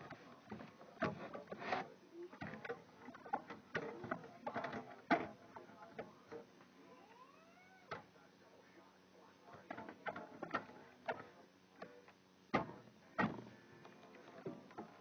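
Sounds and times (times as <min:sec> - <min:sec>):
computer parts clicking and rattling: 0:02.4 - 0:06.2.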